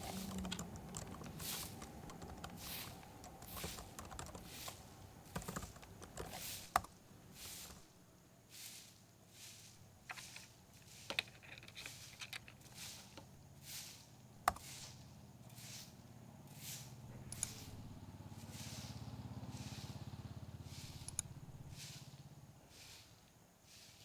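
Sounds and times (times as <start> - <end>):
vehicle engine rumbling: 0.0 - 6.5, 11.2 - 23.1.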